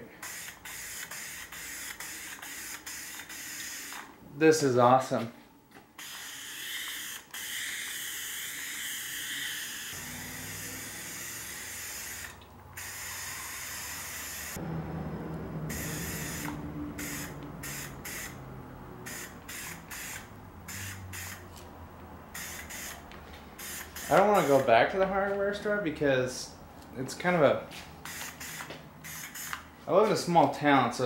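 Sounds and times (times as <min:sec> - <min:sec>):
spray paint can hissing: 0:00.2 - 0:04.1, 0:06.0 - 0:14.6, 0:15.7 - 0:18.4, 0:19.0 - 0:21.6, 0:22.3 - 0:24.7, 0:28.0 - 0:29.6.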